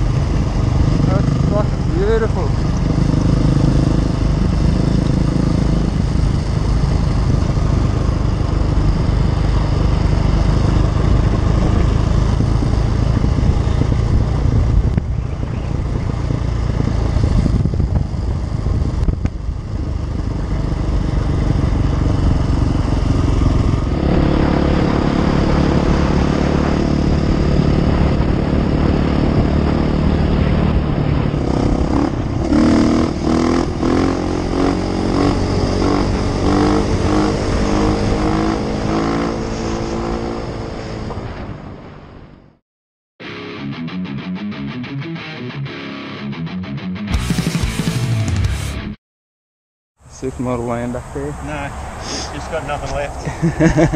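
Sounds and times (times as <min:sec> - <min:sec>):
motorcycle engine running: 0:00.0 - 0:42.6.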